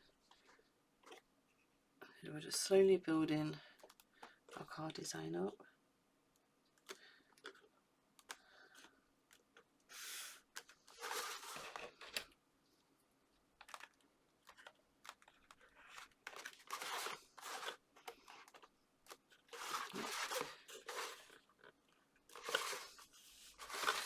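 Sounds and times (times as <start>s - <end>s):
card stock rustling and crinkling: 10.5s - 12.2s, 13.6s - 24.0s.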